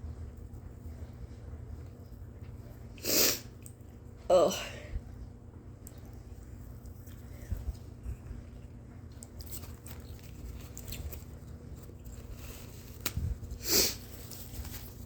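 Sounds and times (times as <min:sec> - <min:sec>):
woman sniffing: 0:13.6 - 0:14.0.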